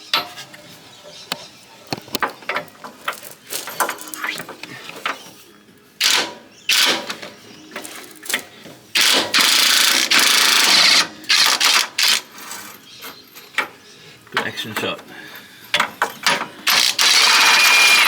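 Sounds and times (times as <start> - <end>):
impact wrench undoing bolts: 9.0 - 12.3, 15.8 - 18.0.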